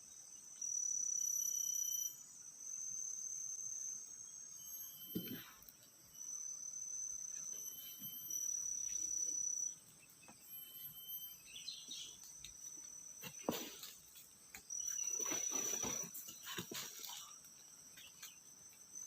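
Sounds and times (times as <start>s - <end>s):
insects buzzing: 0.0s - 19.0s
knocks and rustles: 13.2s - 17.4s.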